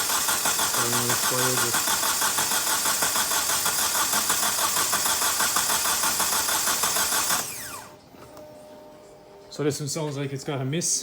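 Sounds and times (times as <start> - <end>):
engine cranking on starter motor: 0.0 - 8.0.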